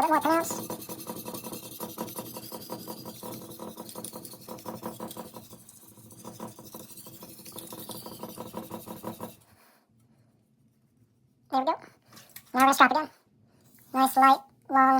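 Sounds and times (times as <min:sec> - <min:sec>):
knife rasping on sharpening stone: 0:00.0 - 0:09.4.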